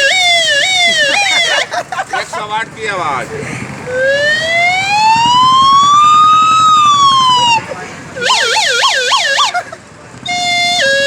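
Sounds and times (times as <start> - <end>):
toy pipe imitating siren: 0.0 - 1.7, 3.9 - 7.6, 8.2 - 9.6, 10.2 - 11.0.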